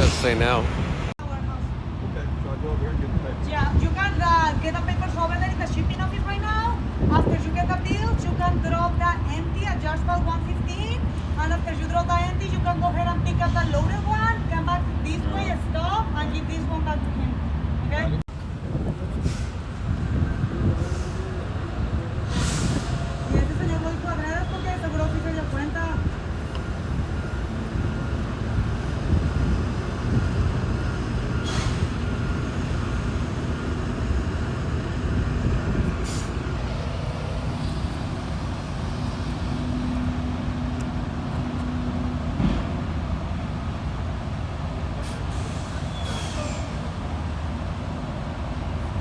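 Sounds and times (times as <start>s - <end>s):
diesel truck engine rumbling: 0.0s - 49.0s
brief air hisses: 22.3s - 23.1s, 31.4s - 32.0s, 45.0s - 46.8s.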